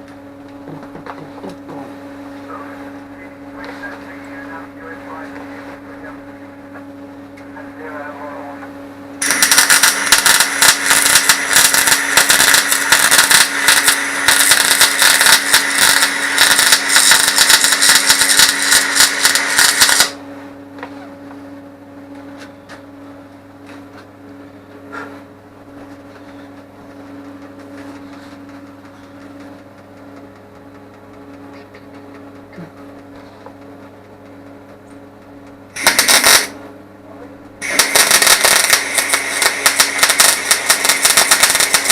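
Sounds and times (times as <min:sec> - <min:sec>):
low steady hum: 0:00.0 - 0:41.9
welding crackle: 0:09.2 - 0:20.2, 0:35.8 - 0:36.6, 0:37.6 - 0:41.9.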